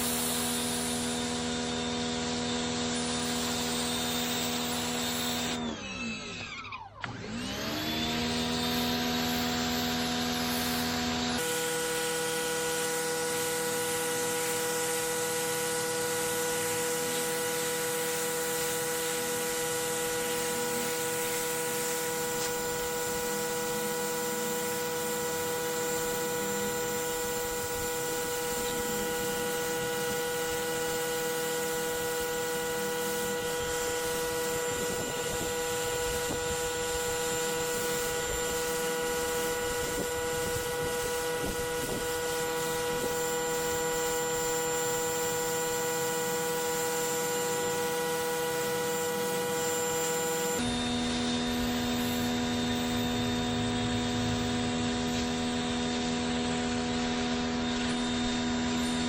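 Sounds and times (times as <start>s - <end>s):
pressure washer machine drone: 0.0s - 59.0s
water spray hissing on concrete: 11.4s - 50.6s.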